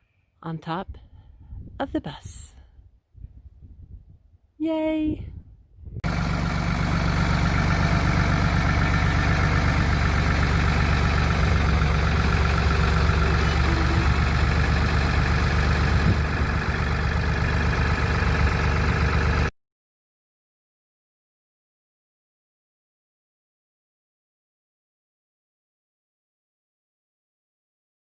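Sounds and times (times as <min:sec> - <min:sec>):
bus engine idling: 0:06.1 - 0:19.5.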